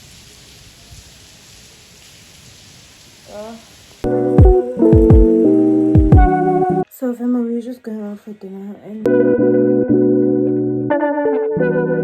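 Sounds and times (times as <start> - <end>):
held keyboard chords: 4.1 - 6.8, 9.1 - 12.0
deep bass drum hits: 4.4 - 5.3, 6.0 - 6.4.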